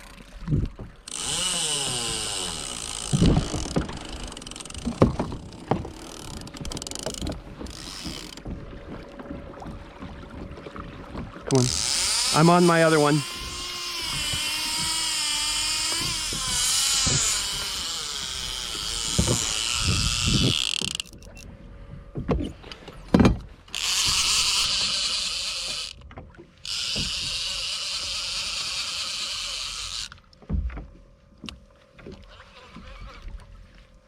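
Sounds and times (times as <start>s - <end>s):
fishing reel drag screaming: 1.1s - 8.4s, 11.5s - 21.4s, 23.7s - 26.0s, 26.6s - 30.2s, 32.3s - 33.3s.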